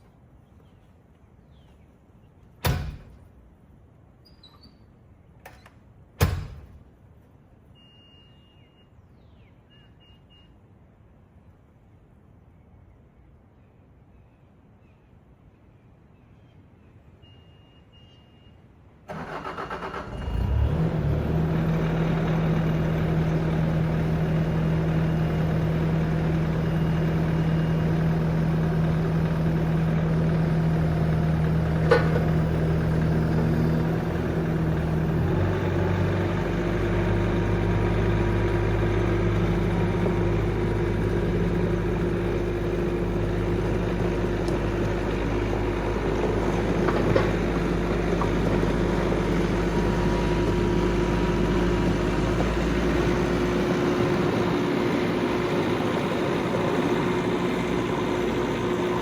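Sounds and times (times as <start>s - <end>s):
short high beep: 7.8s - 8.9s
diesel engine cranking and running: 19.1s - 59.0s.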